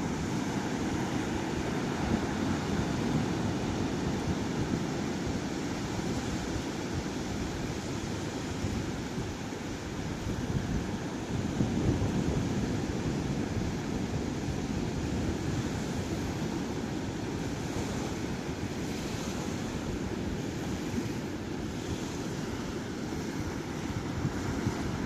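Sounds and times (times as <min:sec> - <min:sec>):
sea waves breaking on shore: 0:00.0 - 0:25.0
wind rumble on microphone: 0:00.0 - 0:25.0.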